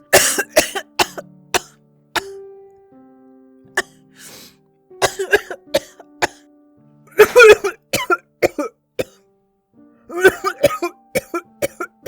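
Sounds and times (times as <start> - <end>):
background music: 0.0 - 12.0
woman coughing: 0.2 - 2.3, 5.0 - 6.4, 7.2 - 9.2, 10.1 - 11.9.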